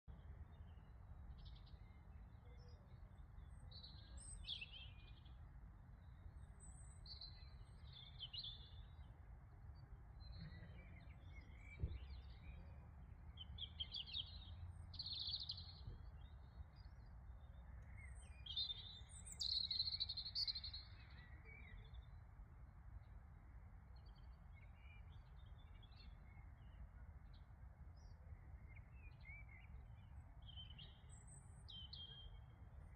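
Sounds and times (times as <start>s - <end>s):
small birds chirping: 10.2s - 22.2s.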